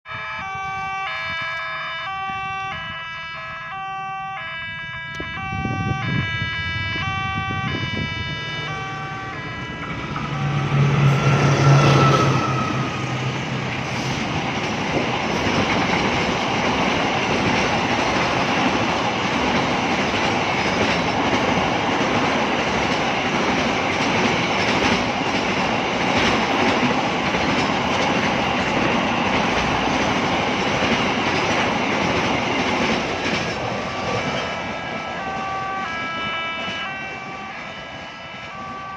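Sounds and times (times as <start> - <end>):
level crossing warning siren: 0.1 - 14.7, 32.1 - 38.9
train wheels rolling: 8.5 - 38.6.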